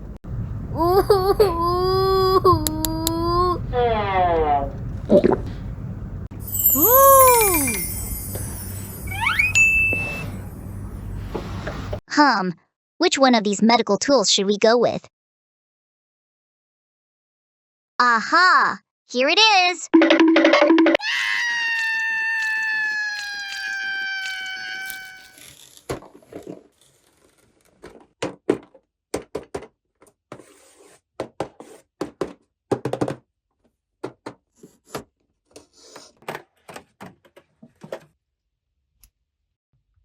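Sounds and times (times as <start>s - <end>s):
held tone falling in pitch: 6.4s - 10.6s.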